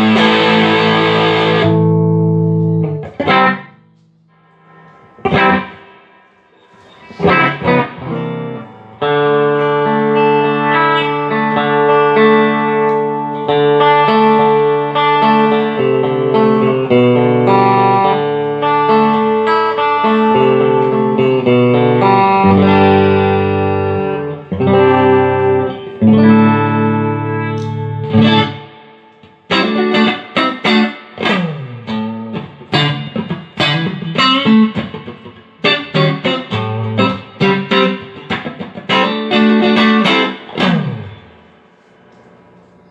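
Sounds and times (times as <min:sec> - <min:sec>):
electric guitar through amplifier: 0:00.0 - 0:42.9.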